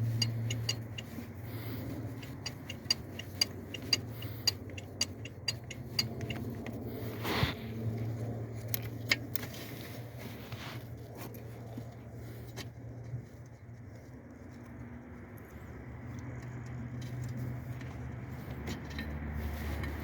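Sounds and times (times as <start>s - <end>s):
hand tools clinking on metal: 0.0s - 1.2s, 2.1s - 6.5s
steady low hum: 0.0s - 20.0s.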